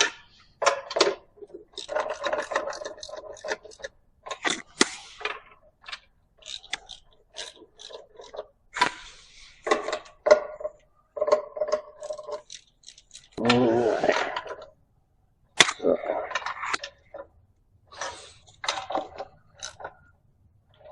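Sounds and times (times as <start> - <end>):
metal clinks and scrapes: 0.0 - 4.4, 9.2 - 13.4
ratchet clicking: 6.4 - 8.3, 12.1 - 13.4, 19.5 - 19.8.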